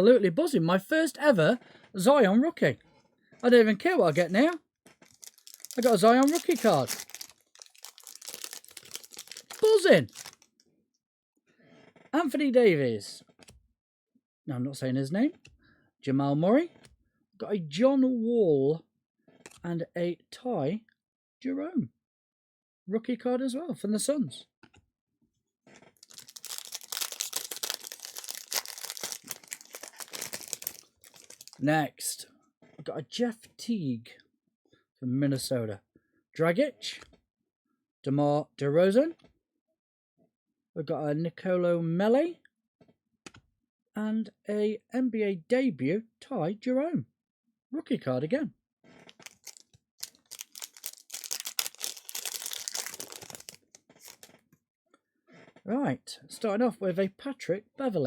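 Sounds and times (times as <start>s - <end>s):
wrapper tearing and crinkling: 3.8s - 10.5s, 26.0s - 31.6s, 49.1s - 54.4s.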